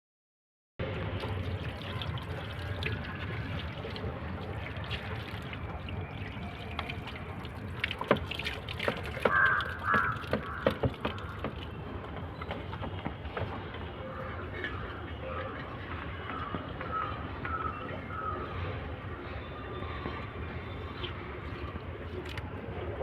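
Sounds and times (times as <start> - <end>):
water pouring and trickling: 0.8 - 13.6, 19.8 - 23.0.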